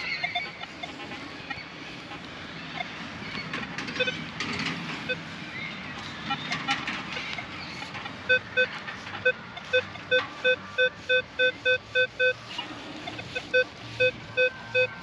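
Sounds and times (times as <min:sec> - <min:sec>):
metal detector beeping: 0:03.9 - 0:04.3, 0:05.0 - 0:05.3, 0:08.3 - 0:15.0.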